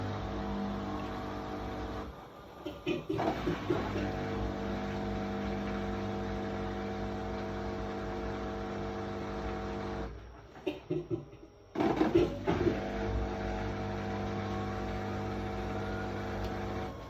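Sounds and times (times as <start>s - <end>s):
washing machine drain pump humming: 0.0s - 17.0s.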